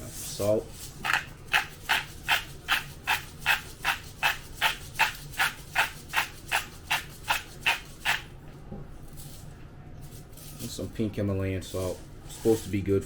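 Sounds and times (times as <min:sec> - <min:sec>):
salt grinder scratchy rattling: 0:00.4 - 0:08.3.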